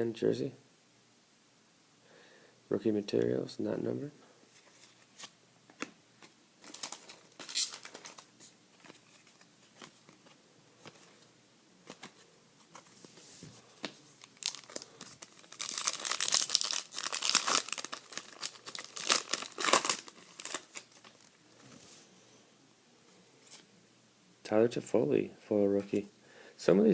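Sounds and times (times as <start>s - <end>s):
wrapper tearing and crinkling: 6.6s - 9.3s, 14.2s - 21.4s.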